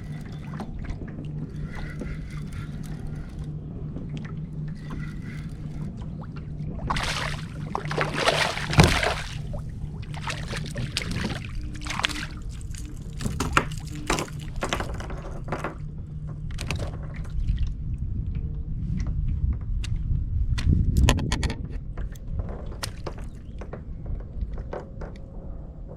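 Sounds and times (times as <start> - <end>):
water splashing and sloshing: 0.0 - 20.0, 20.6 - 25.9
steady low hum: 0.0 - 25.9
knocks and clicks: 0.1 - 9.6, 20.6 - 23.9.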